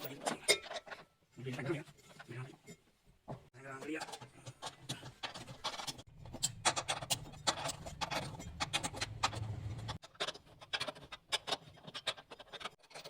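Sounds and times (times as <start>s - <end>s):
tools and parts clicking: 0.0s - 1.2s, 3.9s - 13.0s.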